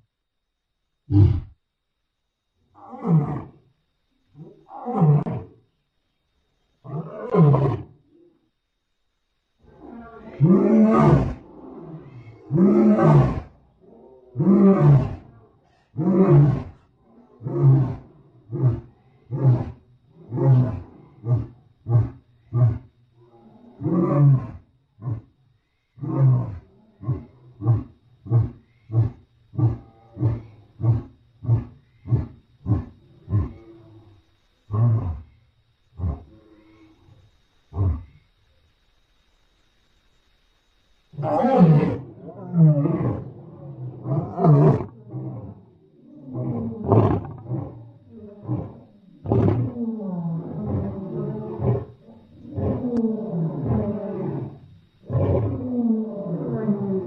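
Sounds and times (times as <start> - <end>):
lion roaring: 9.6 - 25.3, 41.2 - 57.0
lion grunting roars: 41.2 - 57.0.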